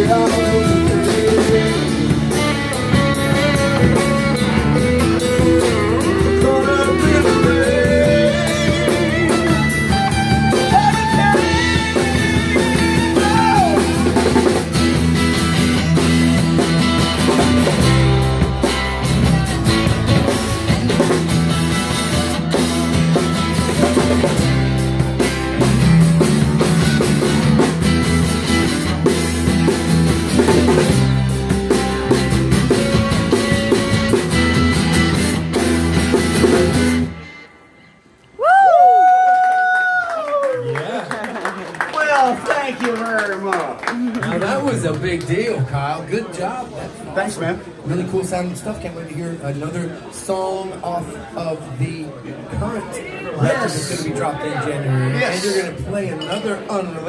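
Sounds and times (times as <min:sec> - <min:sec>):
lead guitar bending notes: 0:00.0 - 0:38.3
rock band playing: 0:00.0 - 0:39.1.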